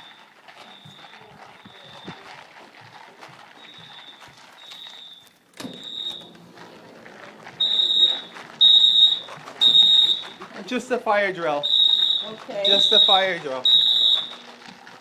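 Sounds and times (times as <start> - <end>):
fire alarm horn honks: 7.6 - 10.4, 11.5 - 14.5.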